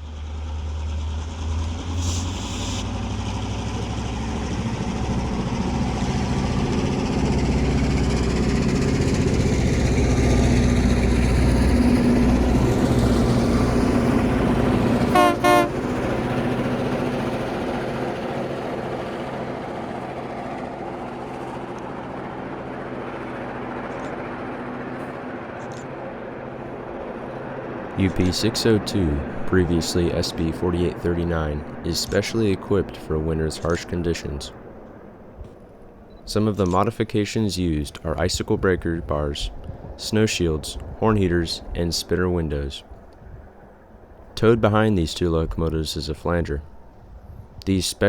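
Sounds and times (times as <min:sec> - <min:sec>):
diesel locomotive engine drone: 0:00.0 - 0:48.0
train horn toots: 0:15.1 - 0:16.0.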